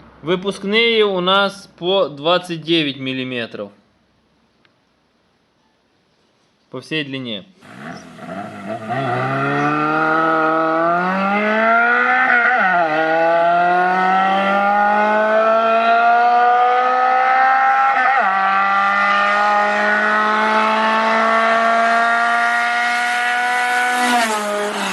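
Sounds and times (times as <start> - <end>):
car engine revving high: 7.6 - 24.9.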